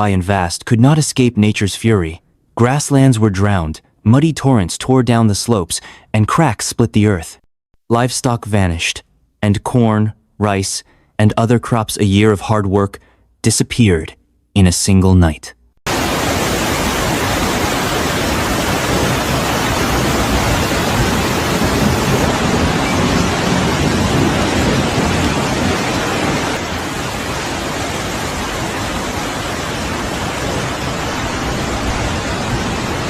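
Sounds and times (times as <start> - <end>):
water rushing: 15.9 - 33.0.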